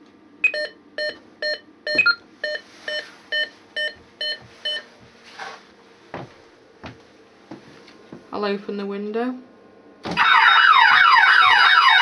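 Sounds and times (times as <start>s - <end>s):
alarm panel short beeps: 0.4s - 4.8s
higher key beep: 0.4s - 4.9s.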